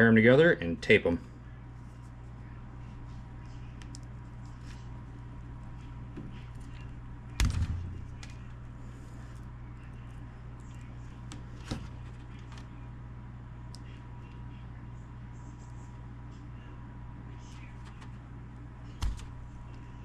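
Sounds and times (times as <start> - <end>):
steady low hum: 0.0 - 20.0
loud knock: 7.4 - 8.3.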